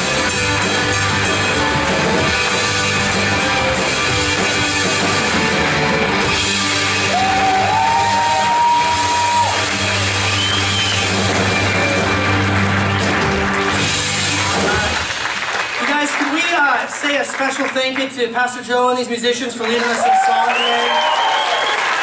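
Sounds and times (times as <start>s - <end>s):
electric guitar: 0.0s - 15.5s
drum kit: 0.0s - 15.6s
rock band playing: 0.0s - 15.8s.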